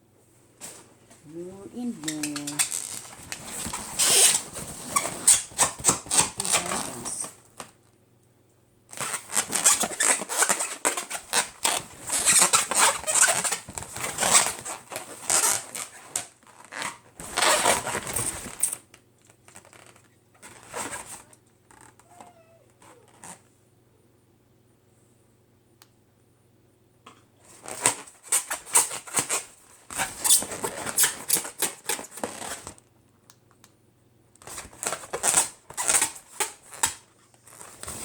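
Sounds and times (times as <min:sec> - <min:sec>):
balloons crackling and rustling: 0:00.7 - 0:07.9, 0:08.9 - 0:18.6, 0:34.4 - 0:38.0.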